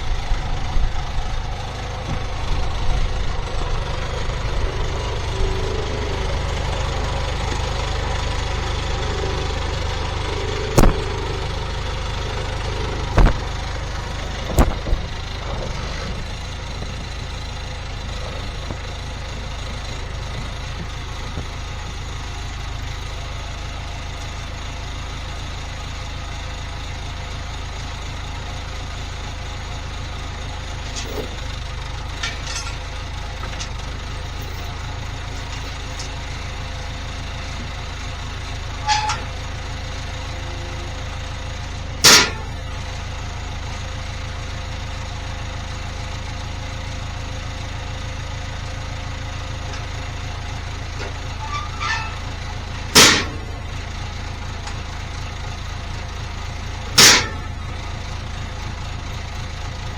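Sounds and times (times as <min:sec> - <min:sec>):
diesel engine running: 0:00.0 - 0:59.9
loud metallic bangs: 0:02.1 - 0:21.5, 0:42.0 - 0:42.7, 0:51.1 - 0:53.8, 0:57.0 - 0:57.7.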